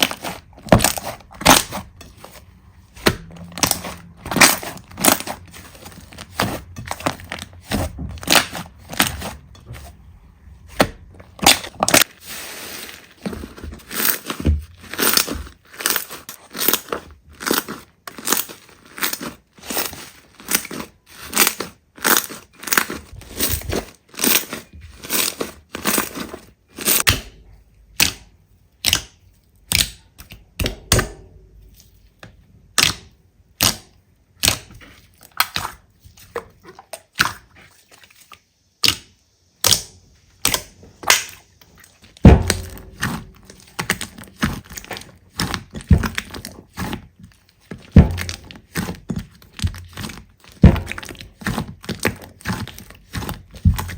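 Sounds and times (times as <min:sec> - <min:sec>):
heavy thud: 0:42.2 - 0:44.6, 0:48.0 - 0:48.4.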